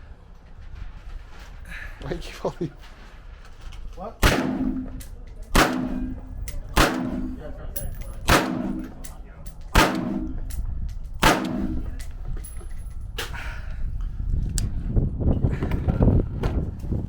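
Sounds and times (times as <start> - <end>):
echoing gunshots: 4.2 - 7.6, 8.2 - 9.0, 9.7 - 10.5, 11.2 - 12.1.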